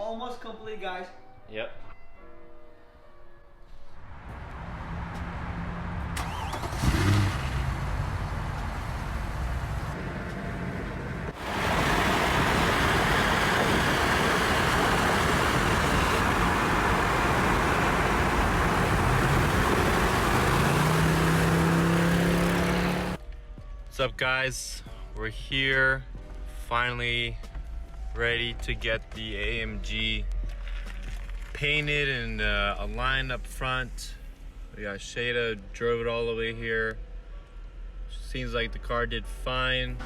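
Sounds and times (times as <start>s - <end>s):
road noise: 3.8s - 23.2s
car engine: 4.1s - 23.2s.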